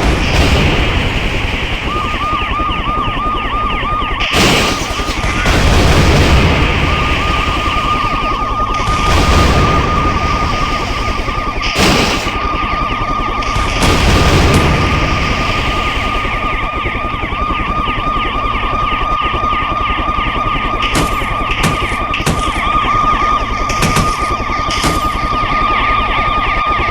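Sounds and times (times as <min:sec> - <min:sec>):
loud gunfire or explosion bursts: 0:00.0 - 0:03.1, 0:04.2 - 0:12.8, 0:13.4 - 0:17.3
helicopter rotor and engine rumble: 0:00.0 - 0:04.4, 0:05.1 - 0:11.8, 0:12.4 - 0:26.8
warbling alarm tone: 0:00.0 - 0:26.9.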